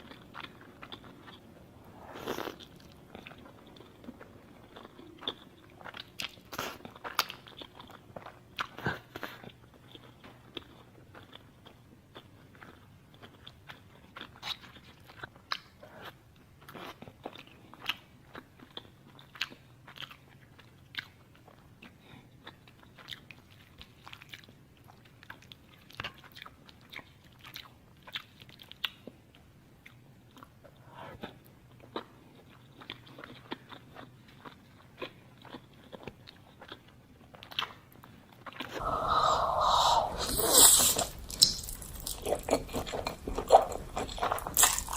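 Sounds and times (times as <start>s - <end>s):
person chewing crunchy food: 0.0s - 44.9s
faint low hum: 29.3s - 44.9s.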